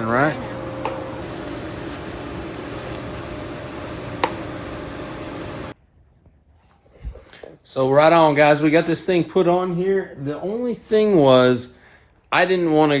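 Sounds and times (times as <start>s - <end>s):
mechanical hum and hiss: 0.0s - 5.8s.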